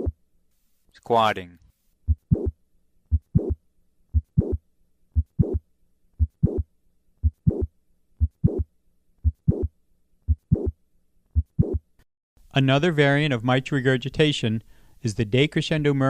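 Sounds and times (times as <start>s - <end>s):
heartbeat with murmur: 2.1s - 2.5s, 3.1s - 4.6s, 5.2s - 5.6s, 6.2s - 6.6s, 7.2s - 9.7s, 10.3s - 10.8s, 11.4s - 11.8s.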